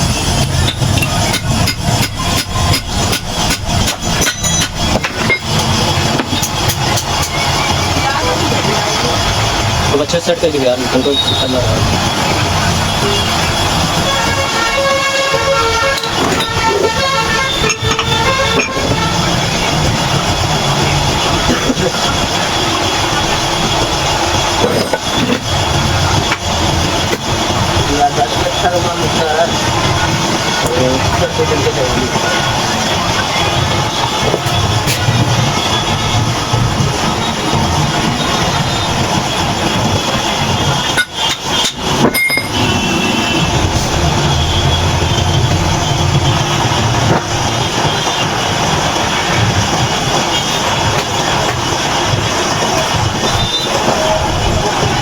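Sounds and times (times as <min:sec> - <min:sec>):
mechanical rumble with rattling: 0:00.0 - 0:55.0
hammer strikes on metal: 0:00.6 - 0:07.4.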